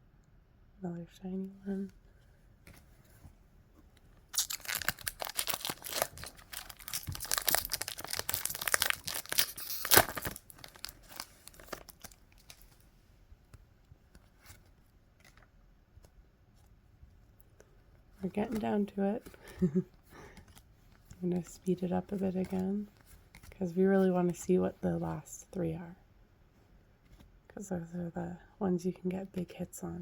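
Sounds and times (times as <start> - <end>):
foil wrapper tearing and crinkling: 4.3 - 12.7.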